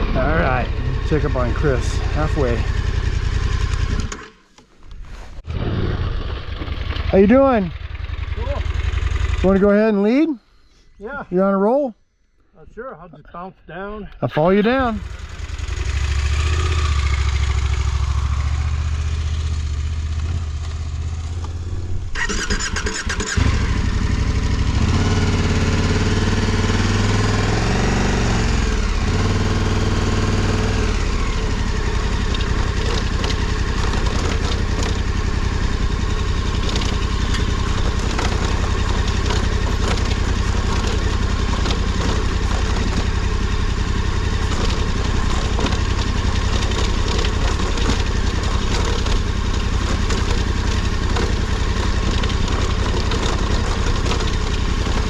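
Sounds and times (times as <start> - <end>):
motorcycle engine: 0.0 - 12.8, 14.4 - 55.0
rocks clicking: 44.4 - 55.0.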